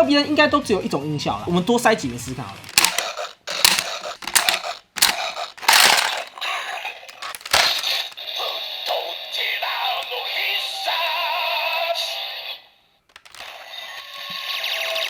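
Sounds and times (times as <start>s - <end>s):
coins clicking into plastic toy: 2.6s - 6.4s, 7.1s - 8.2s, 13.1s - 13.5s
toy electronic sound effect: 2.7s - 6.4s, 13.2s - 15.0s.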